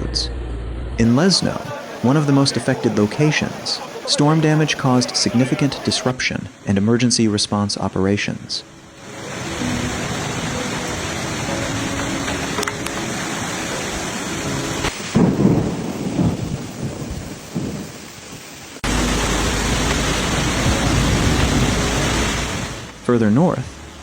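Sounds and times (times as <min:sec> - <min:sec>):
heavy downpour: 0:01.0 - 0:24.0
steady rain: 0:01.0 - 0:24.0
rolling thunder: 0:13.6 - 0:23.1.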